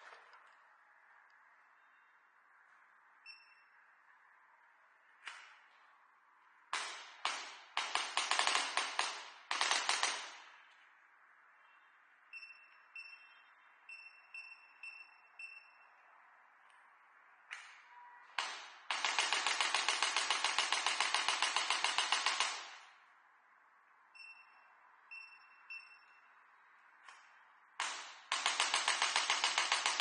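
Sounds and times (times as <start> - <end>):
short electronic beeps: 3.2 - 4.0, 11.6 - 16.2, 24.1 - 26.6.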